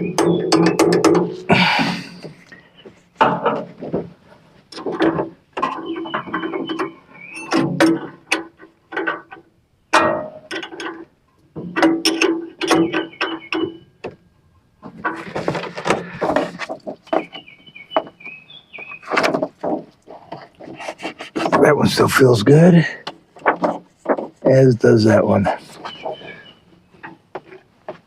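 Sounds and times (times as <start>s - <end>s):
metal clicks and knocks: 0.0s - 1.5s, 3.2s - 18.2s, 18.8s - 21.7s, 23.0s - 24.7s.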